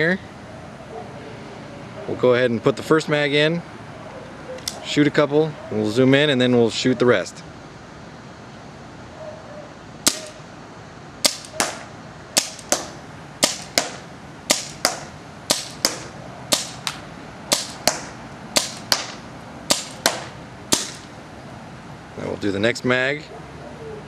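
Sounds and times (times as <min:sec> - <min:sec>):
paintball pistol firing pops: 0:10.0 - 0:10.4, 0:11.2 - 0:21.1
second crack after each shot: 0:10.0 - 0:10.4, 0:11.2 - 0:21.2.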